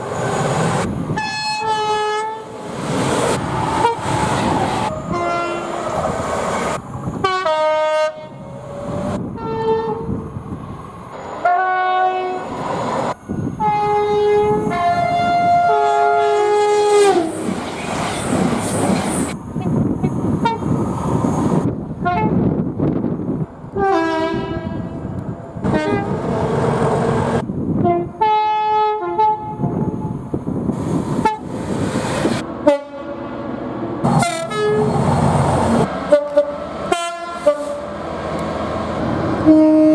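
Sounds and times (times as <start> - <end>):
passing trains running: 0.0 - 39.9
train horn chord: 5.1 - 5.8, 7.2 - 8.5, 13.6 - 17.3, 23.8 - 25.0, 25.6 - 26.2, 32.6 - 33.3, 36.1 - 37.9, 39.4 - 39.9.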